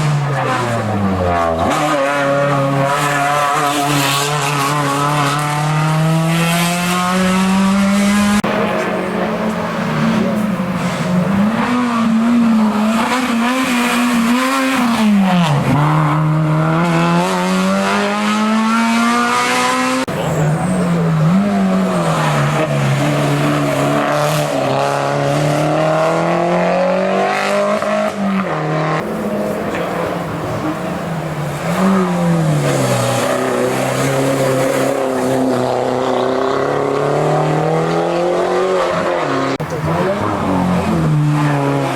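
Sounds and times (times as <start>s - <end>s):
race car engines revving: 0.0s - 41.9s.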